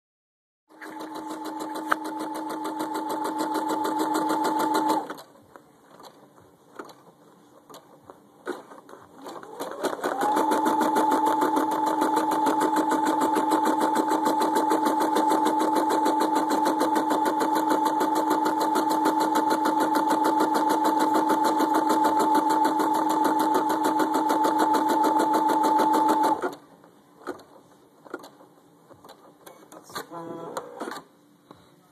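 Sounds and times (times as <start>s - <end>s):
sewing machine stitching: 0.7s - 5.3s, 8.4s - 26.6s.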